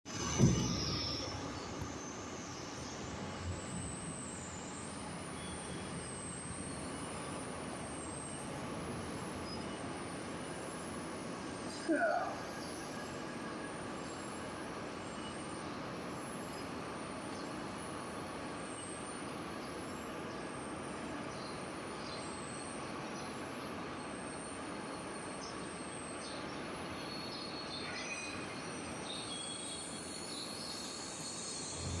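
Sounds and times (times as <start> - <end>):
steady machine noise: 0.1 - 17.2, 31.0 - 32.0.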